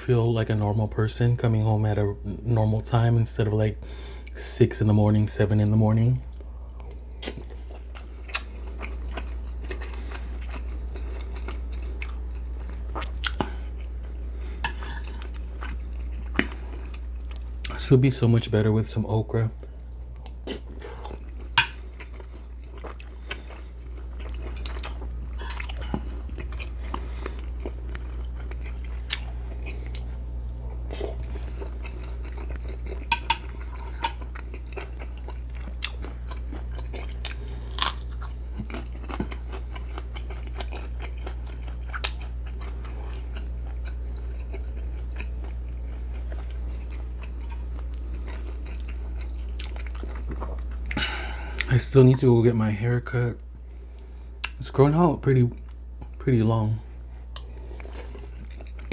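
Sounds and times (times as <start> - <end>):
person chewing food: 6.1 - 17.8, 19.6 - 51.8, 53.5 - 54.7, 56.8 - 58.9.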